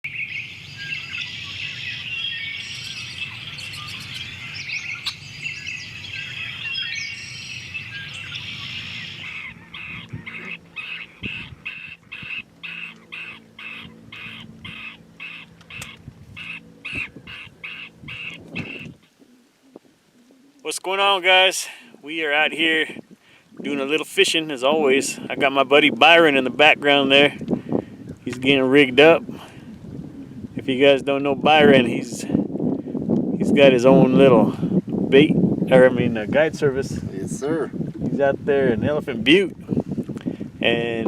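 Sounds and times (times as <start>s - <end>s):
birds chirping chorus: 0.0s - 41.0s
repeated short bird call: 0.1s - 19.0s.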